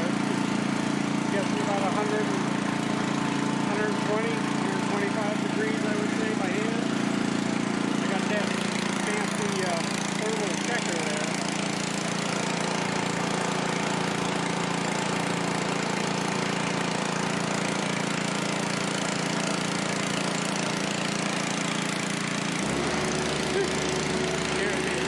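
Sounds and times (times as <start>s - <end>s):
engine running steadily: 0.0s - 25.0s.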